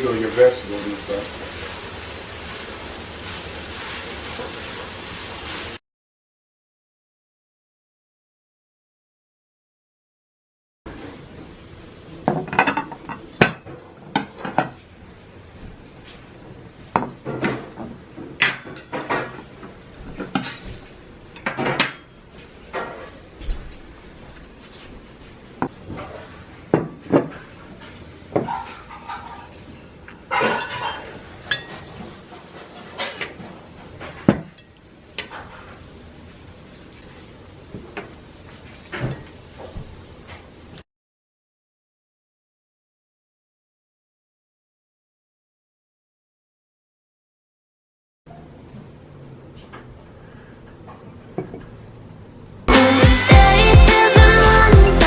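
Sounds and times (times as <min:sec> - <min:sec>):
utensils clinking against pots: 0:12.3 - 0:14.8, 0:30.2 - 0:35.3.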